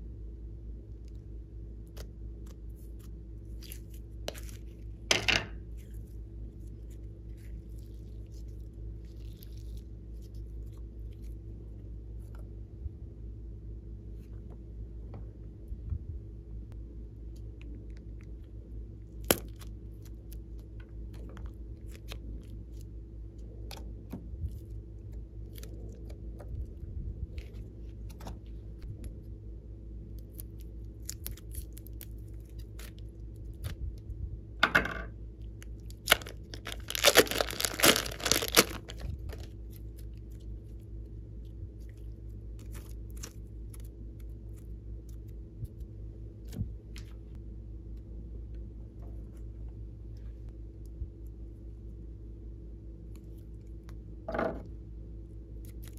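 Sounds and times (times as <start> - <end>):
steady low hum: 0.0 - 55.9
slime squelching and crackling: 1.9 - 12.3, 17.6 - 29.2, 30.1 - 34.0, 35.4 - 47.2, 55.6 - 55.9.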